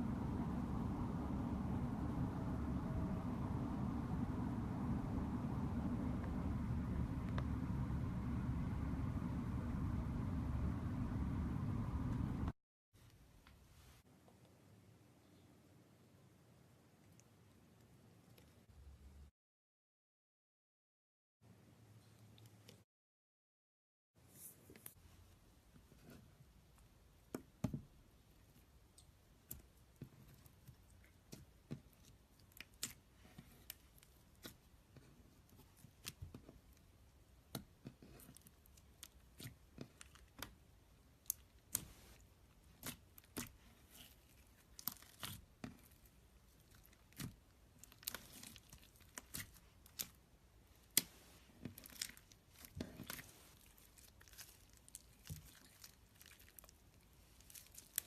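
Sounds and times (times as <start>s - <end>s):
slime squelching and popping: 37.5s - 58.0s.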